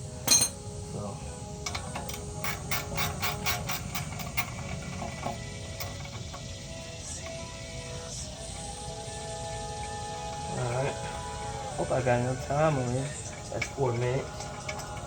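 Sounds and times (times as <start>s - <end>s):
sharp metallic clink: 0.2s - 0.7s
socket ratchet clicking: 1.7s - 6.6s.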